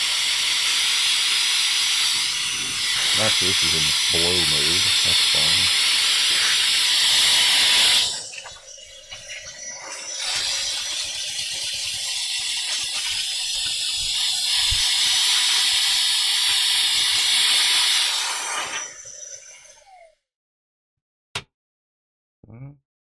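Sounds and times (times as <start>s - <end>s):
handheld vacuum blowing air: 0.0s - 20.1s.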